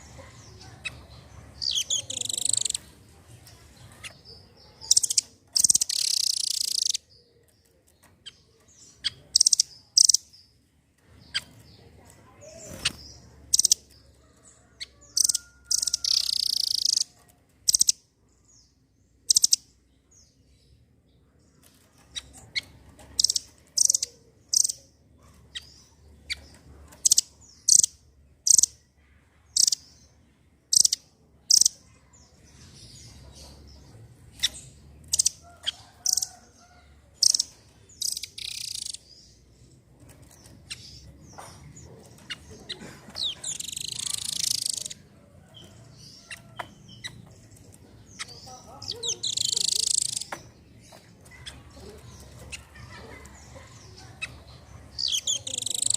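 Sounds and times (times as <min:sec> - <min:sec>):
bird chattering bursts: 0:00.5 - 0:02.8, 0:04.8 - 0:07.0, 0:15.1 - 0:17.1, 0:41.8 - 0:45.0, 0:48.1 - 0:50.3, 0:52.4 - 0:55.9.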